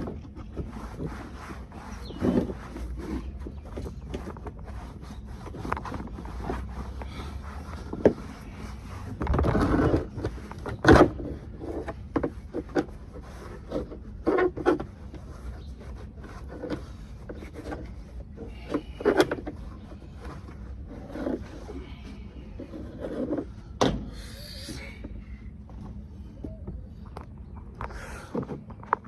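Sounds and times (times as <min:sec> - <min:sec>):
knocks and clunks of handling: 0:07.8 - 0:15.7, 0:16.3 - 0:24.1, 0:25.0 - 0:29.0.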